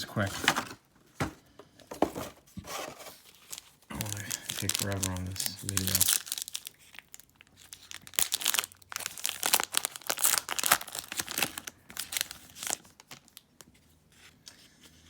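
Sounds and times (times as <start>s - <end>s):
plastic wrapper crinkling: 3.0s - 13.7s.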